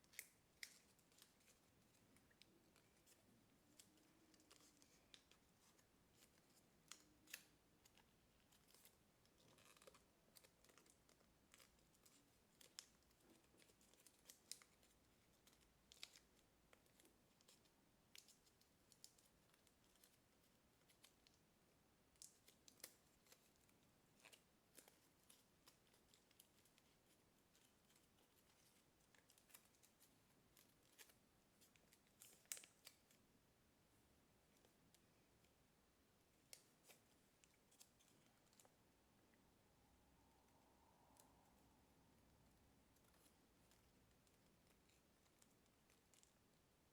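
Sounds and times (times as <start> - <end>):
paper rustling and creasing: 2.6 - 21.3.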